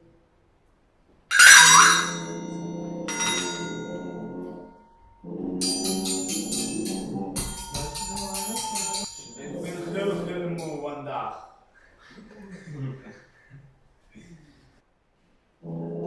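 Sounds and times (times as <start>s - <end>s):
fast rhythmic jingling: 1.3s - 2.5s, 3.1s - 4.0s, 5.6s - 10.0s
bell-like strike ringing: 1.3s - 4.9s
low sustained tones: 1.3s - 10.9s.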